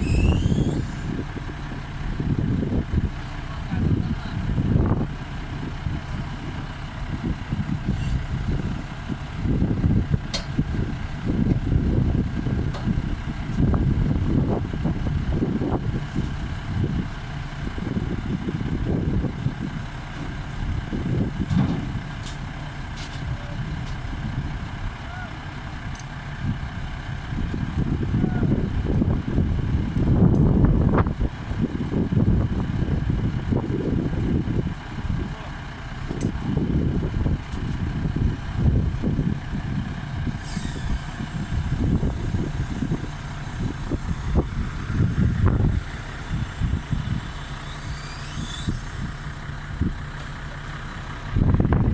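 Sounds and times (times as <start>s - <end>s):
heavy vehicle engine rumbling: 0.0s - 51.9s.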